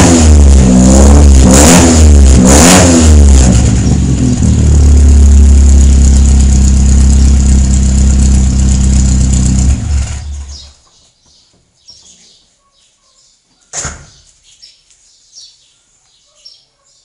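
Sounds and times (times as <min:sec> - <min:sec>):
car engine running and stopping: 0:00.0 - 0:10.8
birds chirping faintly: 0:10.4 - 0:17.0
sharp knock: 0:13.7 - 0:14.2.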